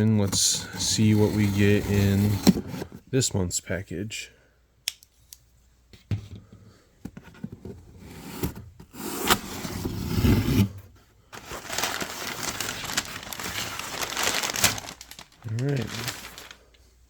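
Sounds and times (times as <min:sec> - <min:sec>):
packing material crinkling: 0:11.4 - 0:16.9
cardboard flaps scraping and tearing: 0:11.5 - 0:16.6.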